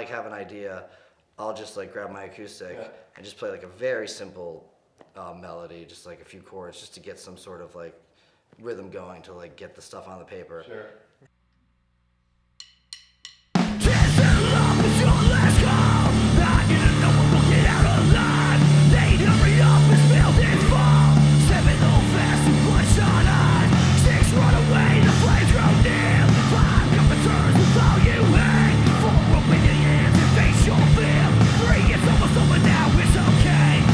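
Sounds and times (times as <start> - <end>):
rock band playing punk: 13.6 - 33.9
person yelling vocals: 13.8 - 33.9.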